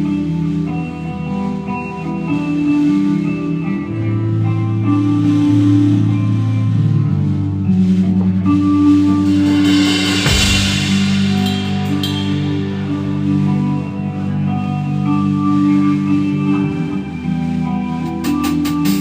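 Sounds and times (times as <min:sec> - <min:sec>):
live band playing slow song: 0:08.0 - 0:19.0
cymbal crash: 0:09.3 - 0:14.1.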